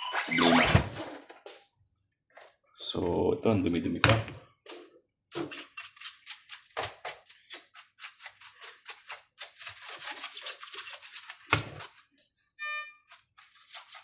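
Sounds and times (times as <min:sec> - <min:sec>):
small brush scrubbing: 0:05.4 - 0:12.2, 0:13.1 - 0:14.0.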